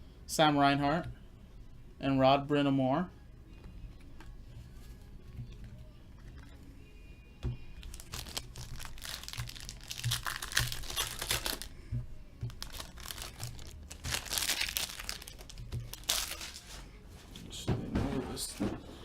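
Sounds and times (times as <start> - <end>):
wrapper tearing and crinkling: 7.8 - 11.7, 12.5 - 16.8.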